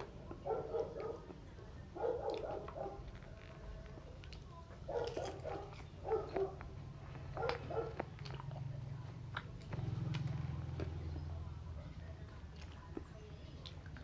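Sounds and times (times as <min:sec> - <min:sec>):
dog barking: 0:00.3 - 0:03.2, 0:04.8 - 0:08.4.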